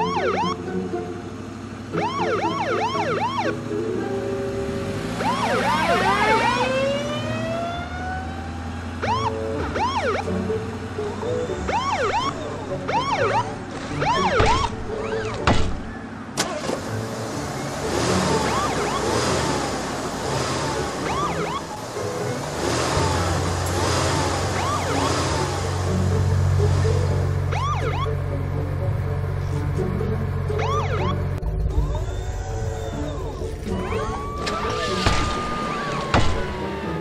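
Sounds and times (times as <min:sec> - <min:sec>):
police siren yelping: 0:00.0 - 0:00.6, 0:01.9 - 0:03.8, 0:05.2 - 0:10.6, 0:11.2 - 0:15.4, 0:18.0 - 0:19.7, 0:20.6 - 0:22.4, 0:24.1 - 0:25.7, 0:26.8 - 0:28.3, 0:30.5 - 0:37.0
low engine hum: 0:00.0 - 0:37.0.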